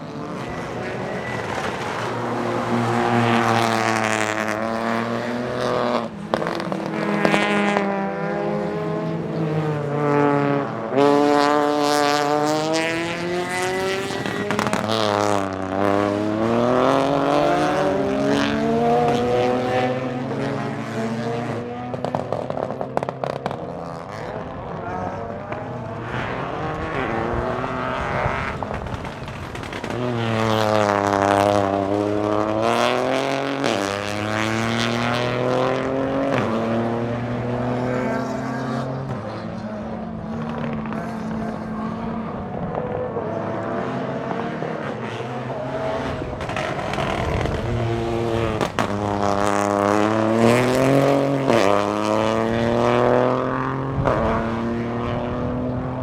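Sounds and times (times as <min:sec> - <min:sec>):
exhaust cracks: 0:28.4 - 0:30.9
car engine revving hard: 0:43.5 - 0:55.8.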